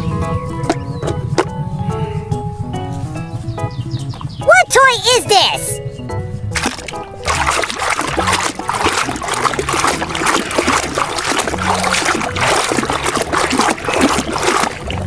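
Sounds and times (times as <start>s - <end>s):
water splashing and trickling: 6.4s - 15.0s.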